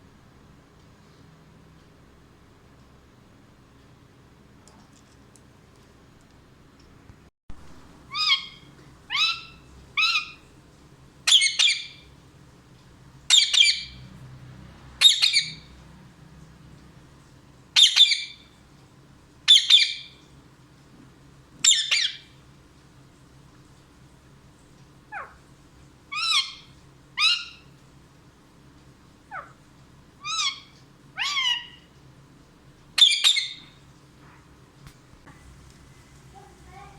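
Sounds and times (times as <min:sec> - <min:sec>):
parrot squawking: 0:08.1 - 0:10.4, 0:11.3 - 0:12.0, 0:13.3 - 0:14.0, 0:15.0 - 0:15.7, 0:17.8 - 0:18.4, 0:19.5 - 0:20.1, 0:21.6 - 0:22.3, 0:25.1 - 0:25.4, 0:26.1 - 0:27.7, 0:29.3 - 0:29.6, 0:30.2 - 0:31.9, 0:33.0 - 0:33.8.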